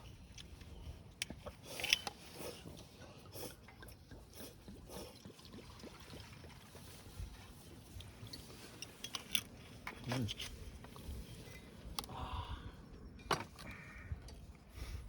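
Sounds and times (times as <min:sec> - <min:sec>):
liquid pouring into a cup: 0:05.0 - 0:07.1
handling clicks and knocks: 0:08.3 - 0:11.0.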